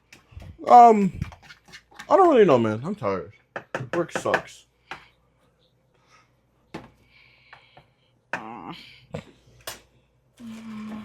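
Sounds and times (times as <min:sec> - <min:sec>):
kitchen knocks and clicks: 0:03.5 - 0:05.1
short vocal sound: 0:10.4 - 0:11.0.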